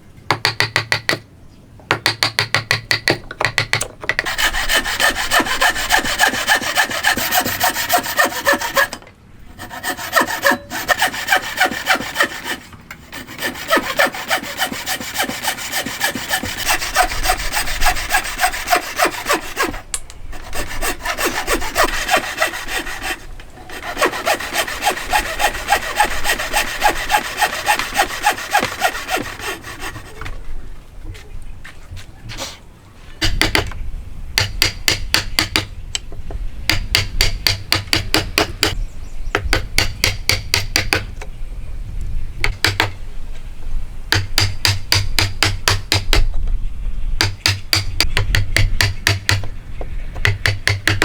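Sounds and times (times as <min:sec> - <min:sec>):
hand saw cutting wood: 0:04.2 - 0:30.4.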